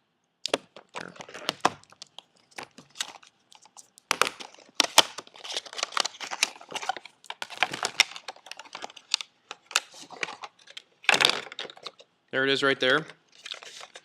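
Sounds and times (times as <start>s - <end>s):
plastic packaging clicks and crinkles: 0.4s - 12.1s, 12.9s - 14.0s.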